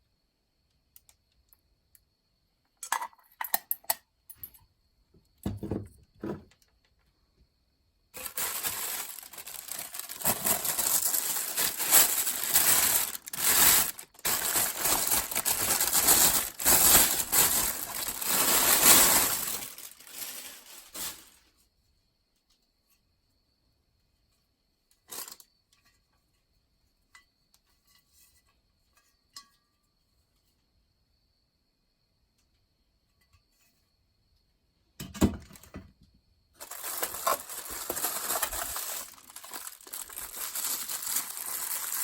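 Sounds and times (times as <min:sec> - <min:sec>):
packaging rustling: 0:08.2 - 0:21.4, 0:36.6 - 0:42.0.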